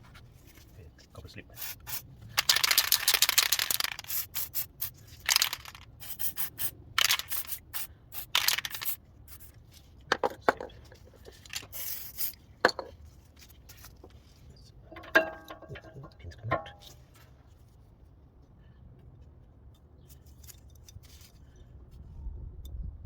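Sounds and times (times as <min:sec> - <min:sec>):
brush scraping on metal: 0:10.8 - 0:12.4.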